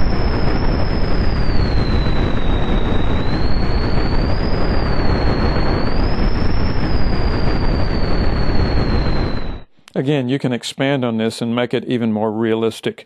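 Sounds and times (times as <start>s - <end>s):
synthesized wind rush: 0.0s - 9.7s
wavering resonant whistle: 0.0s - 9.7s.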